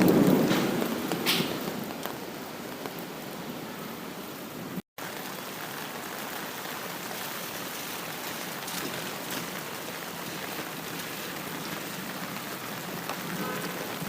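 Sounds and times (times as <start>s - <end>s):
thunder rumble: 0.0s - 3.0s
steady rain hiss: 0.0s - 14.0s.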